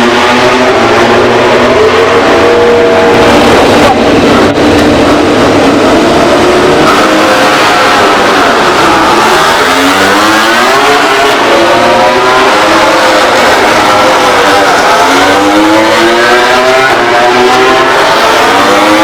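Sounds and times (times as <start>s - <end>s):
racing motorcycle engines revving: 0.0s - 19.0s.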